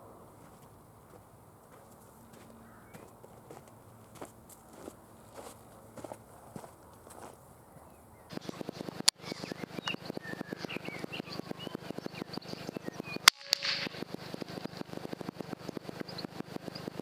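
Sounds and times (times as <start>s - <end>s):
birds chirping: 0.0s - 13.3s.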